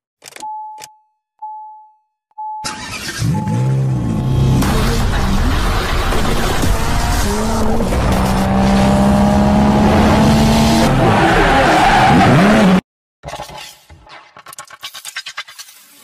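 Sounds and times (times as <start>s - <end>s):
loud car engine revving: 2.8s - 12.8s.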